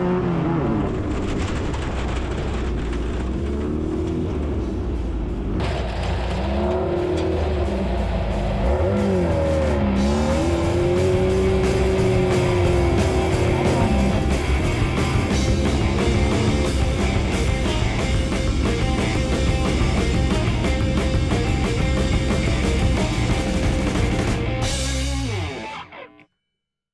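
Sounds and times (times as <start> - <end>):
buggy engine running hard: 0.0 - 25.4
rock music: 4.8 - 26.2.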